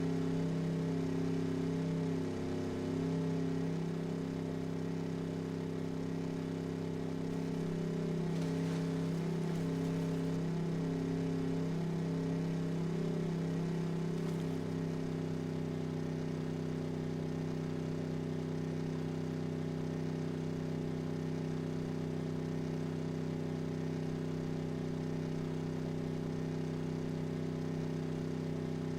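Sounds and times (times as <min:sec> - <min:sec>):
steady hum: 0:07.2 - 0:15.0.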